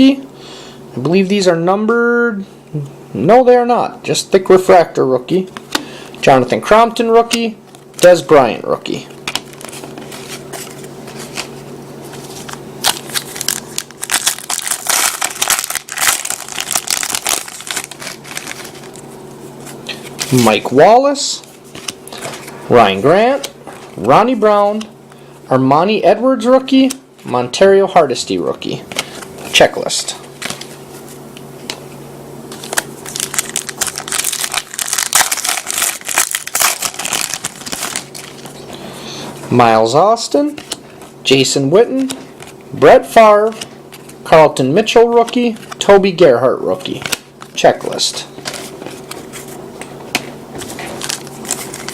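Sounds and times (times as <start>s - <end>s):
low steady hum: 0.0s - 51.9s
wrapper tearing and crinkling: 9.2s - 11.5s, 12.3s - 19.1s, 32.5s - 38.6s, 50.6s - 51.9s.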